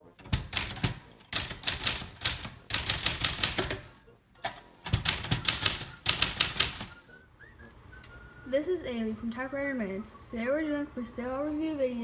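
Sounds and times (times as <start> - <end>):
typewriter key strikes: 0.0 - 7.0.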